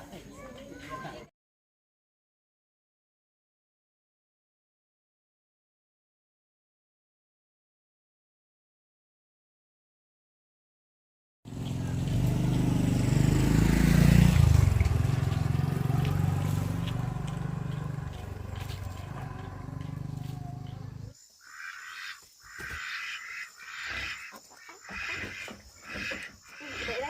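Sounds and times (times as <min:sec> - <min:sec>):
animal calls: 0:17.9 - 0:27.0.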